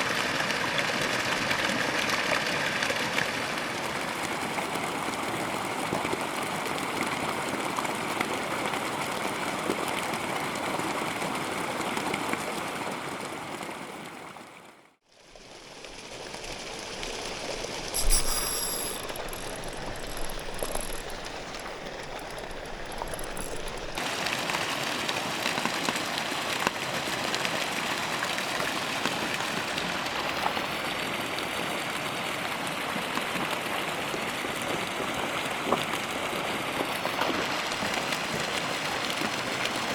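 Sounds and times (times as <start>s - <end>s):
water hissing: 17.2s - 24.0s.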